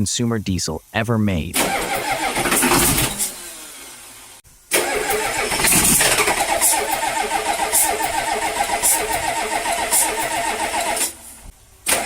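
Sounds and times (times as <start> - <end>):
diesel engine running: 1.6 - 12.0.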